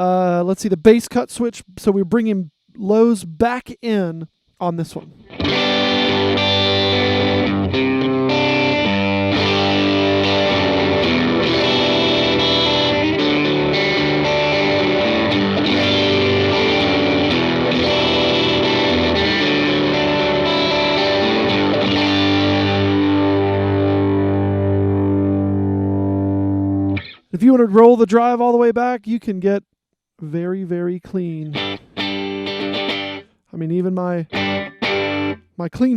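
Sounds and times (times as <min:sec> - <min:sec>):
overdriven electric guitar: 0:05.2 - 0:27.3, 0:31.5 - 0:33.3, 0:34.2 - 0:35.5.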